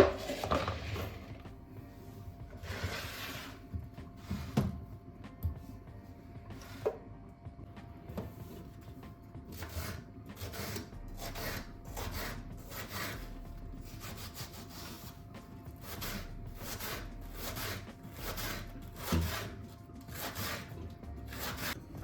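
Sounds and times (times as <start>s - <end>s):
rasping scraping strokes on food: 2.5s - 4.6s, 9.5s - 22.0s.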